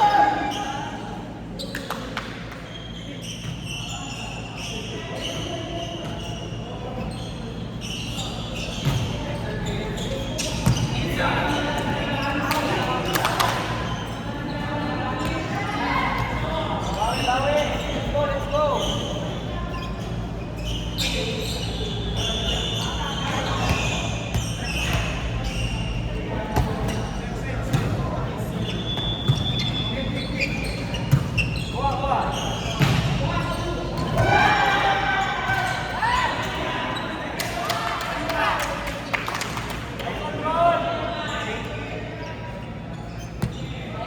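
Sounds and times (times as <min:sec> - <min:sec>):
sneakers squeaking: 0:00.0 - 0:44.0
basketball bouncing on court: 0:31.0 - 0:31.7.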